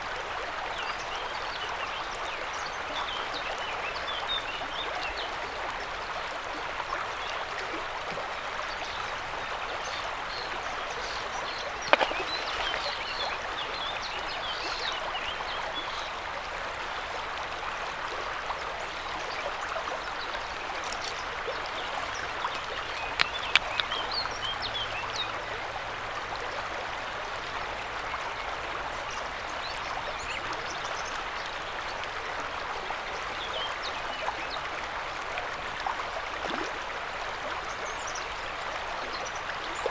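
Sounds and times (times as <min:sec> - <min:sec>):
river water rushing: 0:07.7 - 0:19.0.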